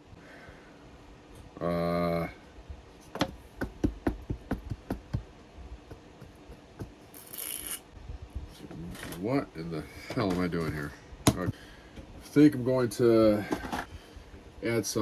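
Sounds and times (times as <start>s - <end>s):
small objects clicking and knocking: 7.1s - 7.8s.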